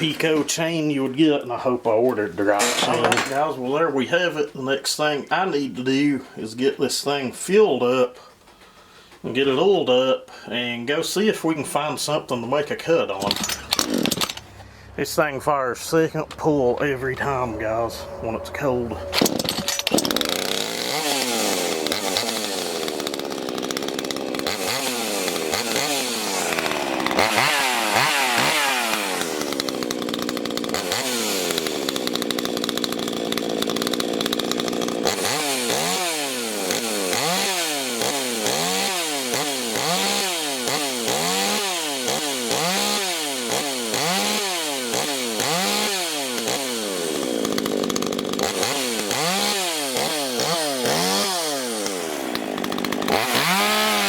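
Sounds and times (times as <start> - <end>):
chainsaw engine revving: 2.3 - 3.6, 12.7 - 14.9, 15.9 - 54.0.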